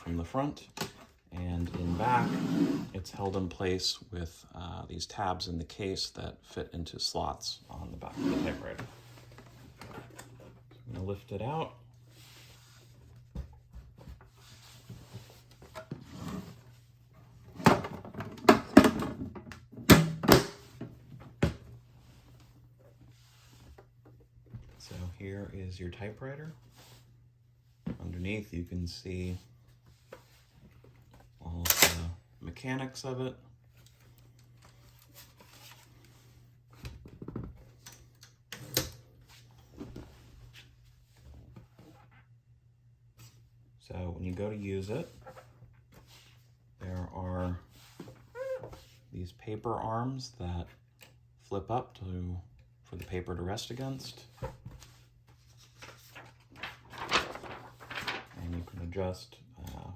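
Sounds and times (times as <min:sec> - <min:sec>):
soft handling and rustling: 0:07.6 - 0:18.0, 0:20.7 - 0:31.5, 0:32.2 - 0:42.4, 0:43.0 - 0:49.2, 0:53.0 - 0:59.9.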